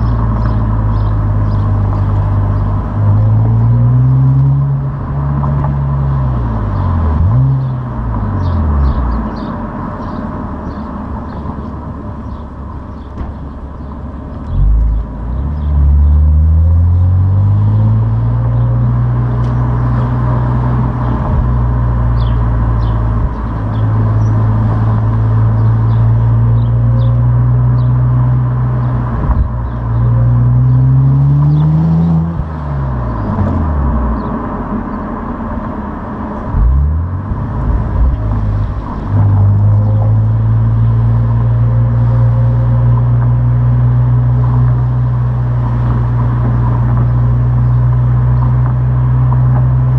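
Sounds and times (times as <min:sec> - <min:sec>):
car engine revving: 0:14.4 - 0:49.9.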